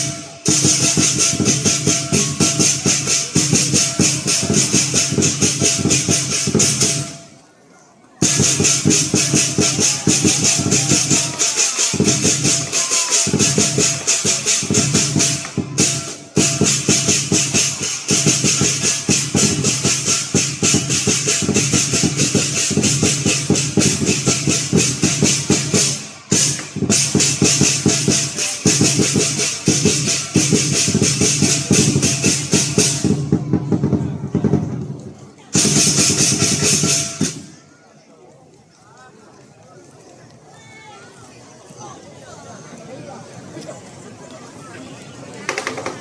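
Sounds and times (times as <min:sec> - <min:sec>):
big drum beaten fast: 0:00.0 - 0:07.2, 0:08.2 - 0:34.8, 0:35.6 - 0:37.6
clashing cymbals: 0:08.2 - 0:33.2.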